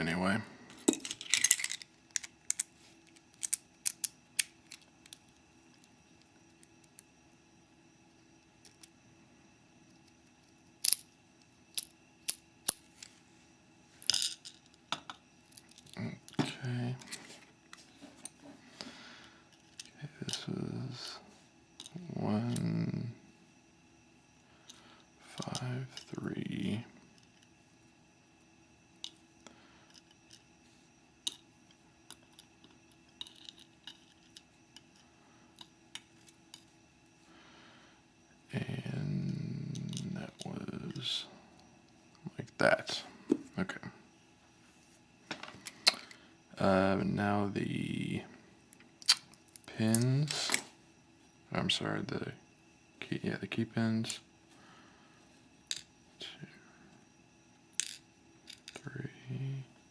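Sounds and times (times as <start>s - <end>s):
metal lock parts clicking: 0.9s - 2.7s.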